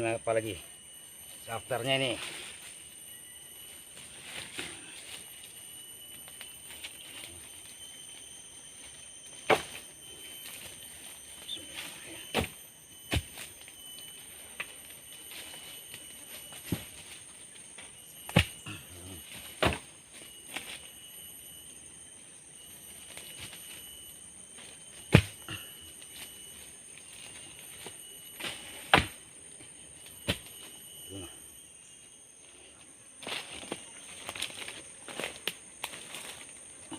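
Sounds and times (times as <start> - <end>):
forest insects droning: 0.0 - 36.9
wood chopping knocks: 18.3 - 18.6, 19.6 - 19.8, 28.9 - 29.2
sticks and dry leaves crackling: 33.2 - 36.7.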